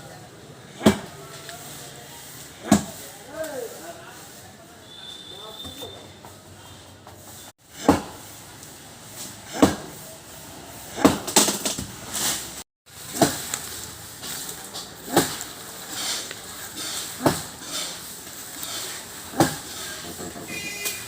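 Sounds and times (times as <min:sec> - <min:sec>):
heavy chopping blows into wood: 0:11.0 - 0:12.4.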